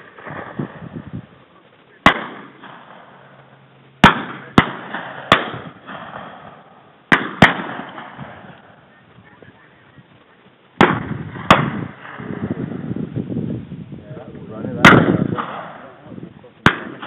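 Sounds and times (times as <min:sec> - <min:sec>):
shotgun shots with echo: 0:02.0 - 0:03.2, 0:04.0 - 0:08.7, 0:10.8 - 0:12.6, 0:14.8 - 0:16.0, 0:16.6 - 0:17.0.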